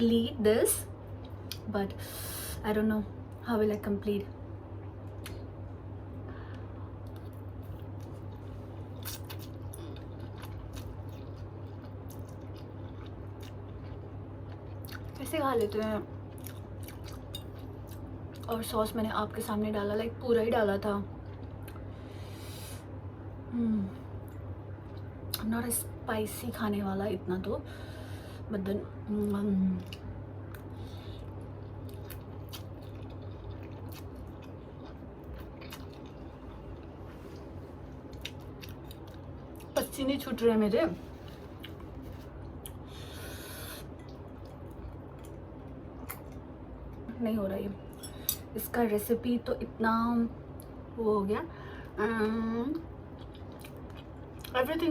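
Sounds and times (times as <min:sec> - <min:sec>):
faint low hum: 0:00.0 - 0:54.9
person chewing: 0:07.0 - 0:15.2, 0:16.3 - 0:18.5, 0:29.8 - 0:39.8, 0:41.1 - 0:47.0, 0:53.1 - 0:54.5
person chewing with mouth smacks: 0:31.3 - 0:39.8, 0:43.8 - 0:47.0, 0:53.1 - 0:54.6.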